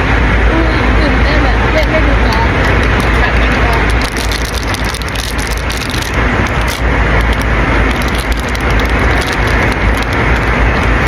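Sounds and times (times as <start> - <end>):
jet cabin engine rumble and hiss: 0.0 - 11.0
small clicks: 2.6 - 11.0.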